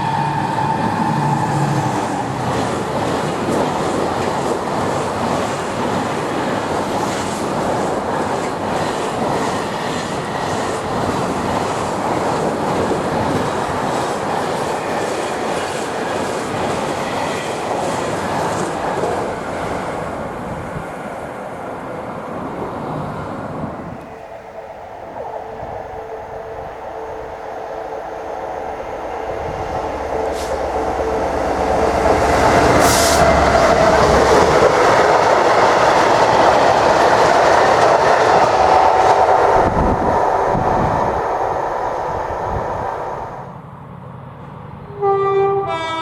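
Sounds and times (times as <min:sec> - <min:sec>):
freight train wheels on rail: 0:00.0 - 0:46.0
wheels clacking over rail joints: 0:23.6 - 0:43.4.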